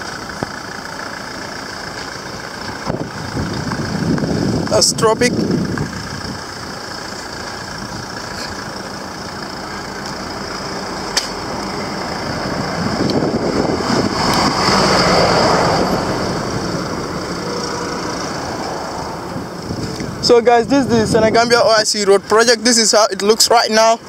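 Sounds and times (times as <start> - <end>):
road traffic engines: 0.0 - 24.0
vehicle passing close by: 7.4 - 21.8
sharp click: 11.1 - 11.4.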